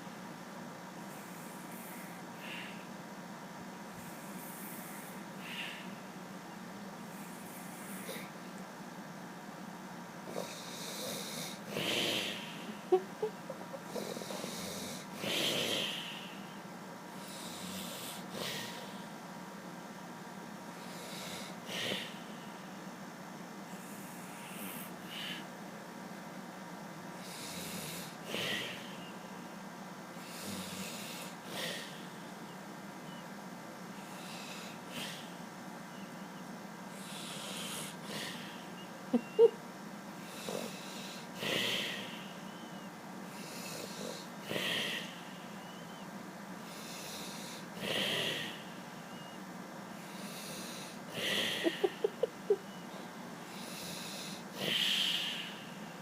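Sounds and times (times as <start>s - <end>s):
man snoring: 10.2s - 13.0s, 13.9s - 16.4s, 17.2s - 18.9s, 20.8s - 22.2s, 27.2s - 28.9s, 30.2s - 32.0s, 37.0s - 38.5s, 40.3s - 42.3s, 43.3s - 45.2s, 46.7s - 49.2s, 50.0s - 52.6s, 53.5s - 55.6s.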